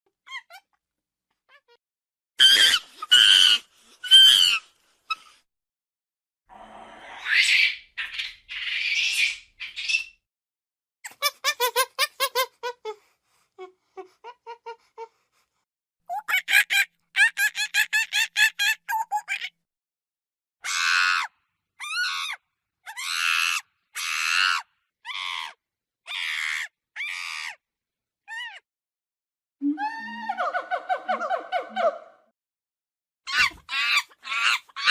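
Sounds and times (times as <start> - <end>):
monkeys calling: 33.3 - 34.9.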